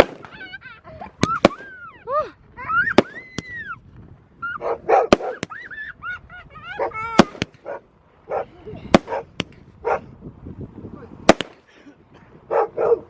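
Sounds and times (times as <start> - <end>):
firework bangs: 0.0 - 2.0, 2.8 - 3.8, 4.9 - 5.9, 6.9 - 7.8, 8.8 - 9.7, 11.2 - 11.7
high-pitched firework warbling: 0.0 - 2.0, 2.7 - 3.8.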